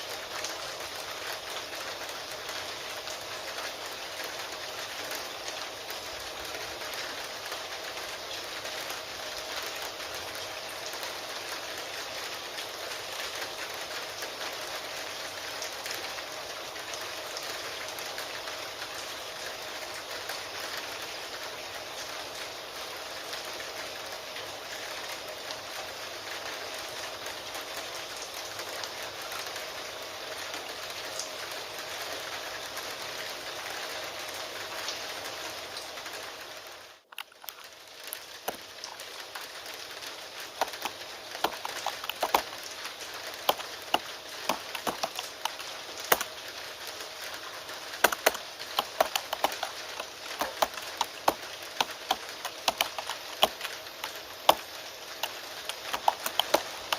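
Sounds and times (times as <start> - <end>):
steady rain: 0.0 - 56.9
computer keyboard typing clicks: 40.6 - 42.6, 43.4 - 46.3, 48.0 - 56.9.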